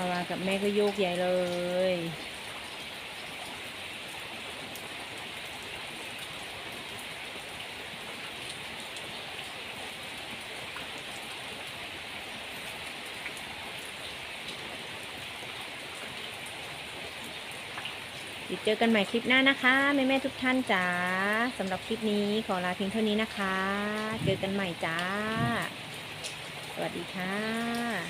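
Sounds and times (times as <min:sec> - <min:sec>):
rain pouring: 0:00.0 - 0:28.0
faint drip ticks: 0:24.0 - 0:28.0.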